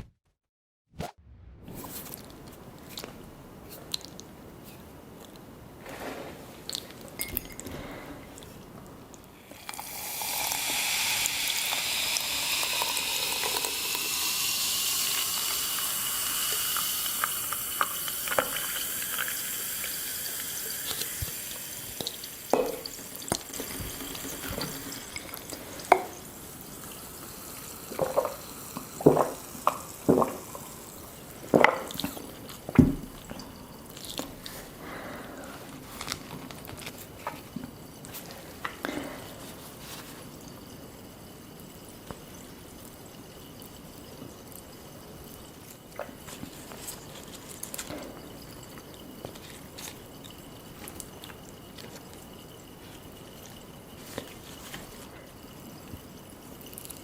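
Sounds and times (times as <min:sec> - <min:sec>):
liquid pouring into a glass: 0:09.4 - 0:34.6, 0:40.4 - 0:57.0.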